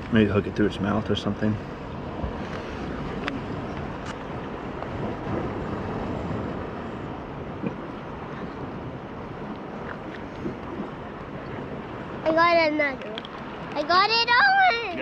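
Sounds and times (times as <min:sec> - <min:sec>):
ocean surf on rocky shore: 0:00.0 - 0:15.0
wind buffeting microphone: 0:00.0 - 0:15.0
faint clicks: 0:13.0 - 0:13.8.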